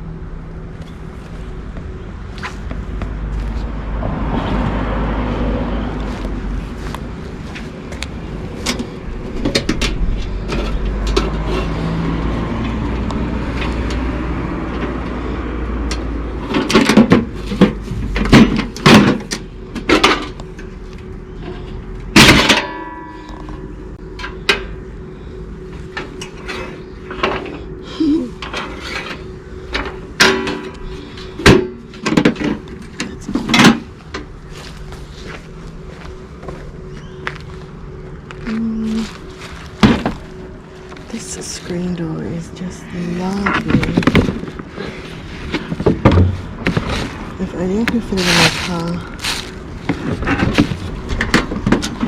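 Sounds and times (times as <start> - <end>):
vehicle engine rumble: 0.0 - 52.0
objects knocking and clattering: 16.4 - 20.4, 28.4 - 34.3, 43.4 - 44.7
loud ringing clang: 22.2 - 23.7.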